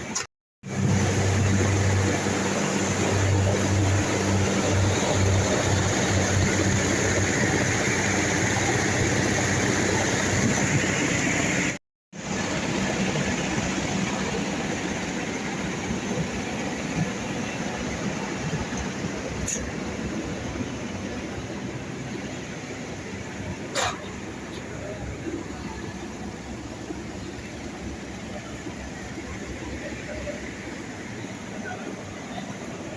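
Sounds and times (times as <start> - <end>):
chiller machinery running: 0.0 - 32.9.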